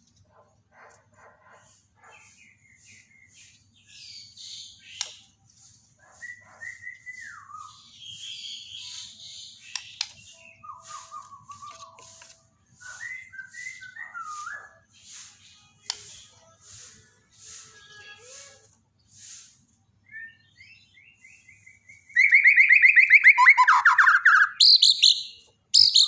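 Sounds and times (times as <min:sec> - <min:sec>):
bird high chips and clicks: 0:04.4 - 0:16.9, 0:21.9 - 0:26.0
songbird whistled phrases: 0:06.2 - 0:12.0, 0:12.8 - 0:14.9, 0:20.1 - 0:26.0.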